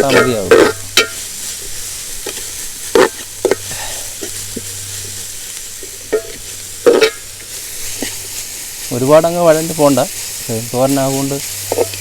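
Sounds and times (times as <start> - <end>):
onions sizzling in oil: 0.0 - 12.0.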